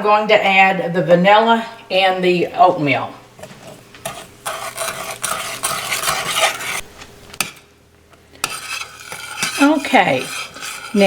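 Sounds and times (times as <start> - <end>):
spoon scraping a saucepan: 3.6 - 7.7, 8.4 - 11.0.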